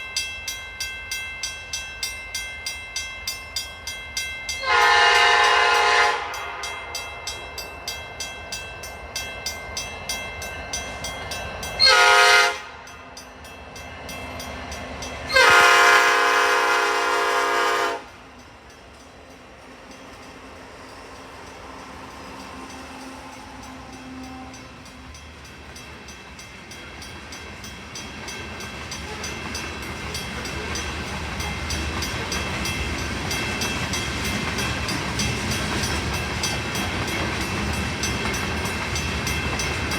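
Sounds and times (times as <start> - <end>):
crossing bell dinging: 0.0 - 39.9
train rumbling: 0.0 - 39.9
locomotive horn blasts: 4.6 - 6.9, 11.8 - 12.9, 15.3 - 18.2, 23.8 - 24.8.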